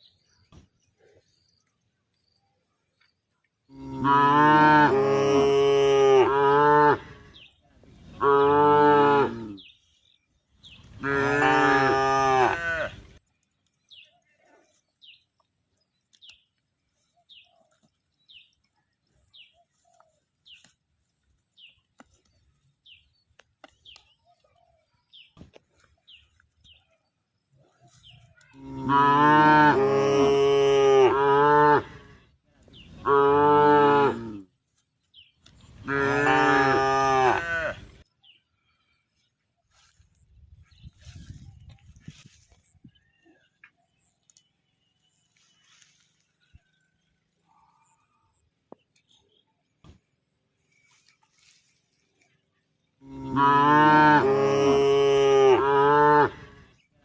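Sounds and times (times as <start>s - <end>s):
cow mooing: 3.7s - 7.4s, 11.0s - 13.0s, 28.6s - 32.2s, 35.8s - 37.8s, 53.0s - 56.6s.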